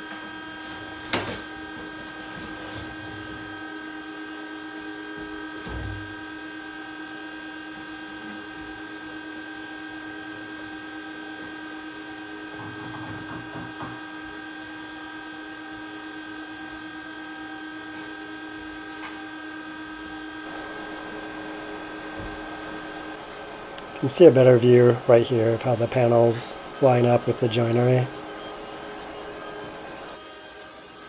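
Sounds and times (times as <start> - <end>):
steady electrical hum: 14.2 - 31.0.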